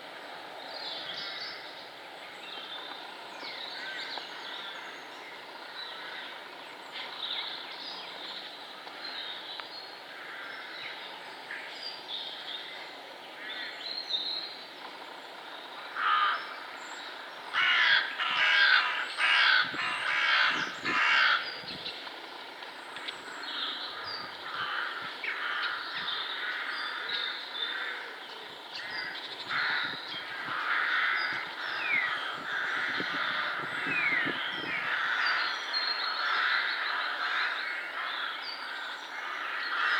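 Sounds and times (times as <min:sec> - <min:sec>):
birds cawing harshly: 0:15.8 - 0:16.8, 0:17.5 - 0:21.6, 0:23.3 - 0:28.2, 0:28.8 - 0:39.9
small birds chirping and singing: 0:19.0 - 0:39.9.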